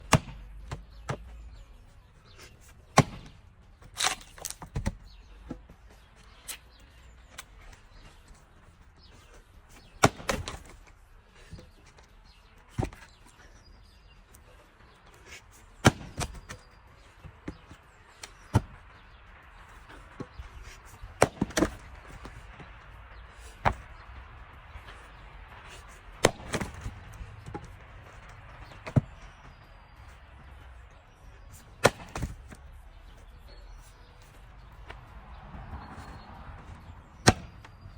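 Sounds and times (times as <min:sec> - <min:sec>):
axe chopping wood: 0:00.0 - 0:01.3, 0:02.9 - 0:05.7, 0:09.8 - 0:10.8, 0:12.7 - 0:13.2, 0:15.8 - 0:16.7, 0:17.4 - 0:18.8, 0:20.2 - 0:22.4, 0:26.2 - 0:27.7, 0:31.6 - 0:32.6, 0:37.2 - 0:37.8.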